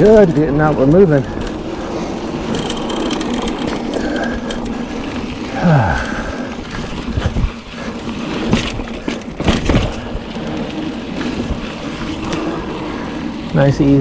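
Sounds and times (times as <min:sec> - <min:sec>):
bike knocking and rattling: 0:00.0 - 0:14.0
tyre and wind rush: 0:00.0 - 0:14.0.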